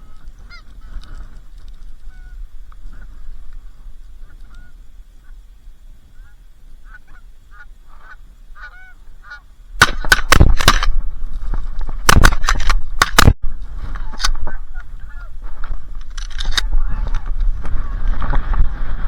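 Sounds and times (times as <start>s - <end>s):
geese honking: 0.0s - 10.3s, 13.9s - 15.7s
wind on microphone: 0.0s - 19.0s.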